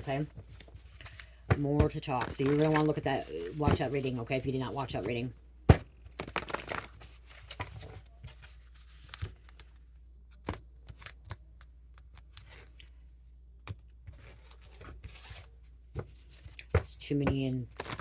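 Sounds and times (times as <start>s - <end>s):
soft card rustling: 0.0s - 10.0s
cards slapping and snapping: 5.7s - 7.9s.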